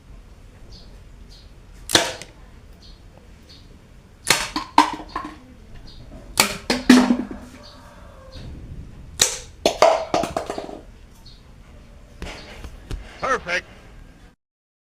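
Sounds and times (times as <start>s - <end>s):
toy pistol snapping: 1.9s - 2.4s, 9.2s - 9.5s.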